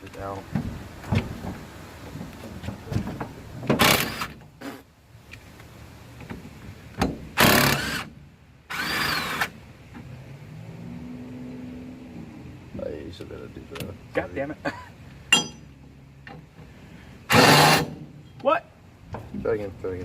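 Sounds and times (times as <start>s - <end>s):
power wrench bursts: 3.8s - 4.8s, 7.4s - 8.1s, 8.7s - 9.5s, 17.3s - 18.0s.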